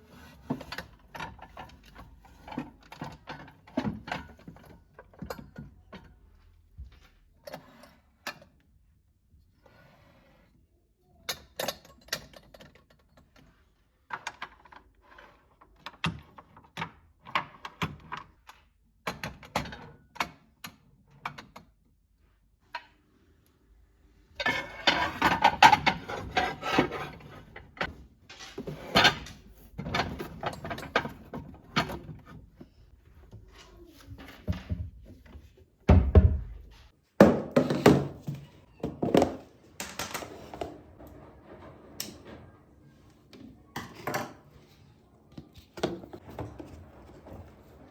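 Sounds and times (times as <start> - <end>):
kitchenware knocking and clattering: 24.4 - 32.6, 35.9 - 36.6, 37.2 - 44.7.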